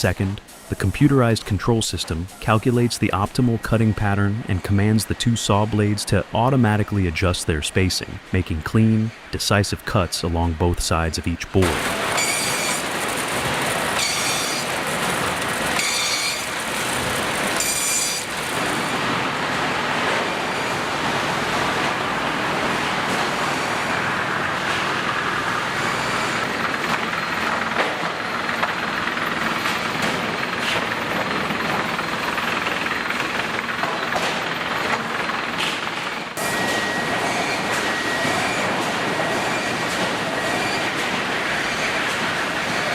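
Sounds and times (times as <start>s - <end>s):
sawmill machinery running: 10.0s - 42.9s.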